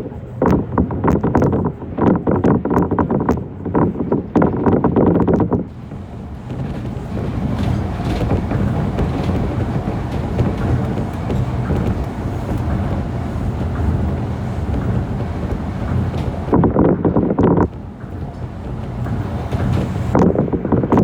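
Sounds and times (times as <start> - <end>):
train rumbling with hiss: 5.7 - 21.0.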